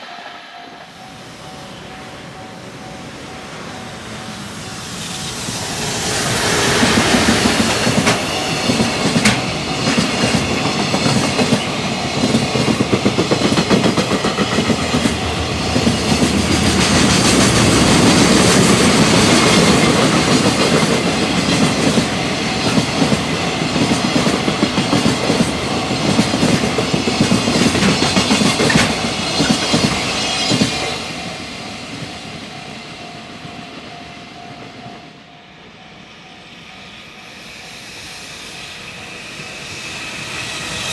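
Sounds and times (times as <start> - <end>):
train rolling rumble: 0.8 - 34.0
train wheels clickety-clack: 4.5 - 33.9.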